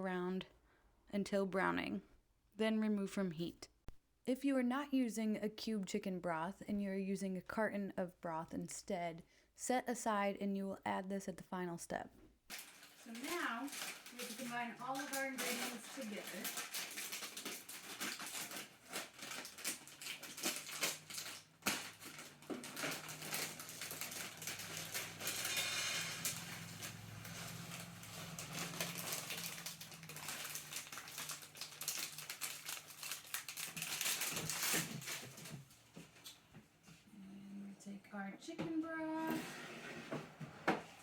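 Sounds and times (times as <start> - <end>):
packaging crinkling: 12.5 - 35.8.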